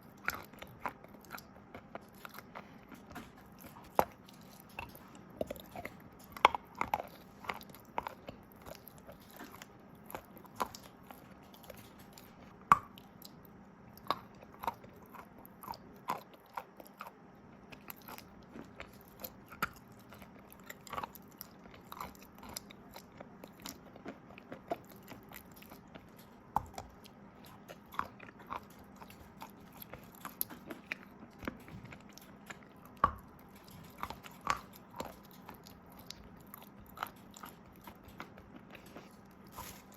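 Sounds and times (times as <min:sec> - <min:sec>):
chalk crunching while chewed: 0:00.0 - 0:39.9.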